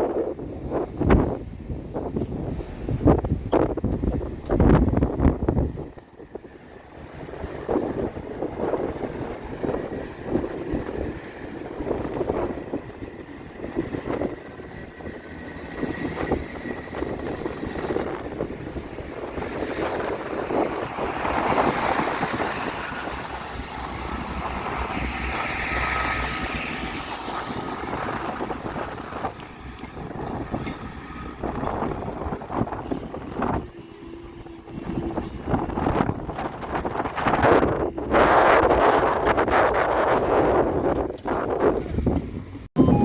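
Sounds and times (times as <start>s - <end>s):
wind buffeting microphone: 0.0s - 43.0s.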